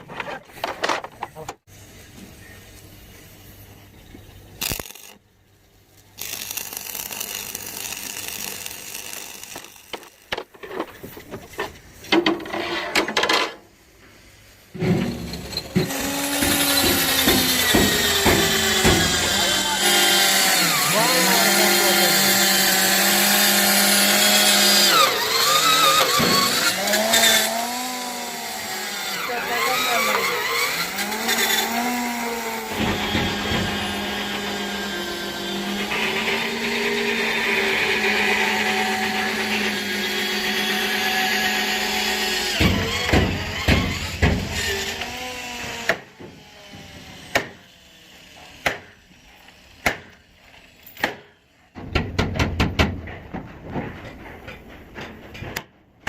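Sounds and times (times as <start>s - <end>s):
electric power tool whining: 6.2s - 10.4s, 14.8s - 49.8s
sharp metallic knocks: 14.8s - 19.4s, 51.0s - 55.7s.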